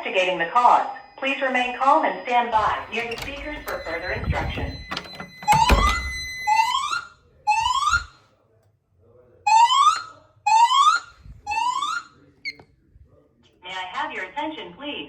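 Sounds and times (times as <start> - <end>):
steady high alarm tone: 0.0 - 8.1.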